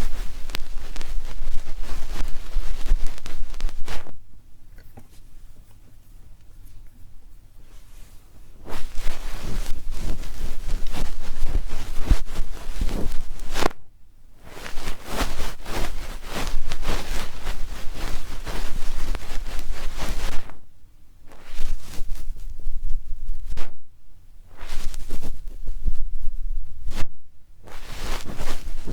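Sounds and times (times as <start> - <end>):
ear pick scraping microphone: 0.0 - 4.2, 8.6 - 13.8, 14.4 - 20.6, 21.3 - 23.8, 24.5 - 28.9.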